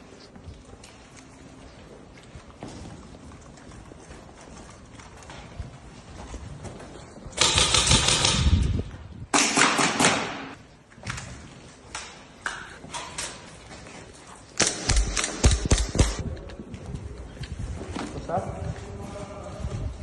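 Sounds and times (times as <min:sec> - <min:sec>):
airsoft rifles firing bursts: 0:07.4 - 0:08.7, 0:09.3 - 0:10.6, 0:14.6 - 0:16.2.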